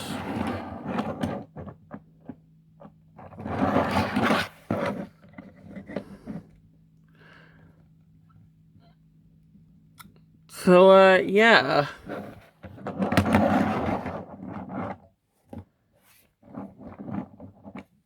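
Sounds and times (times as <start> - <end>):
plastic rubbing and scraping: 0.0 - 6.7, 12.0 - 18.0
faint steady hum: 0.0 - 13.4.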